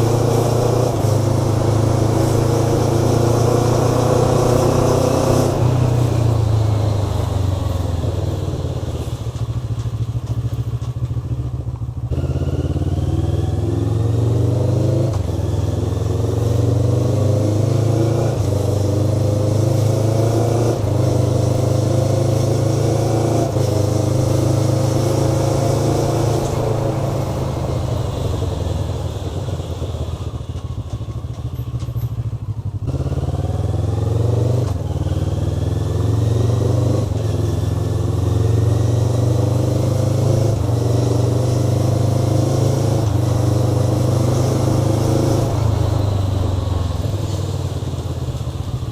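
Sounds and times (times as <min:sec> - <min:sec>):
motorcycle engine revving: 0:00.0 - 0:48.9.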